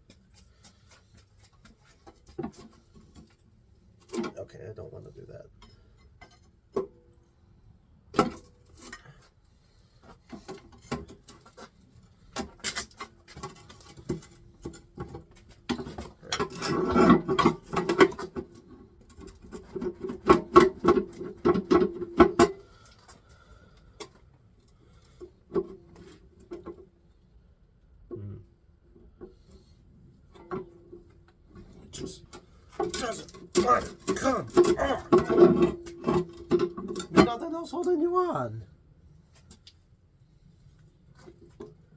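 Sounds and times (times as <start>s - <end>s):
hand tools clanking on metal: 4.0s - 4.6s, 12.4s - 22.6s, 31.6s - 38.0s.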